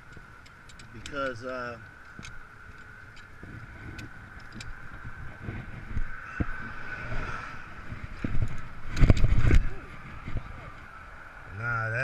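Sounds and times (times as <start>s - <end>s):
small knocks and clicks: 0.0s - 6.6s
vehicle and wind rumble: 0.0s - 12.0s
high-pitched whine: 2.2s - 11.9s.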